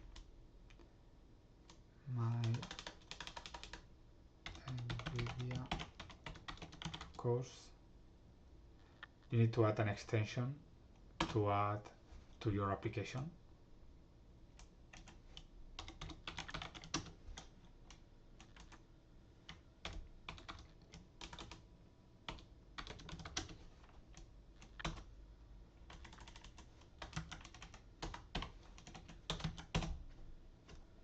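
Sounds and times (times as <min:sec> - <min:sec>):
typing on computer keyboard: 0:02.3 - 0:03.8, 0:04.4 - 0:07.2, 0:14.6 - 0:18.8, 0:19.5 - 0:21.6, 0:22.3 - 0:25.1, 0:25.8 - 0:30.0.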